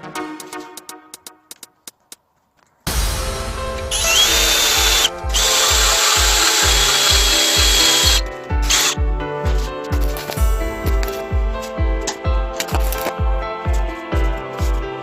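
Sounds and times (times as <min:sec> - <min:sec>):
background music with beat: 0:00.0 - 0:02.0, 0:02.9 - 0:15.0
power tool whining: 0:03.9 - 0:09.0.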